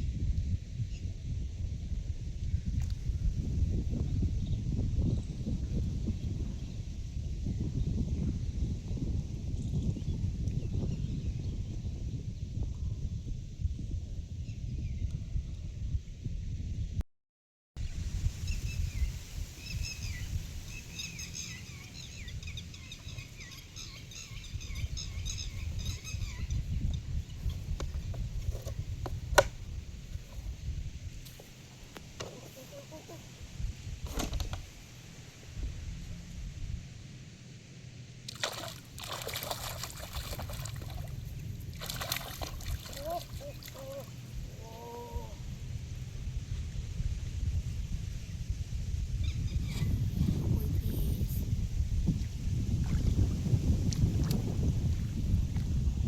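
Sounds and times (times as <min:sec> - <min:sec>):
steady low rumble: 0:18.1 - 0:56.0
birds chirping: 0:18.7 - 0:27.6, 0:39.5 - 0:45.4
water splashing and sloshing: 0:38.3 - 0:44.2.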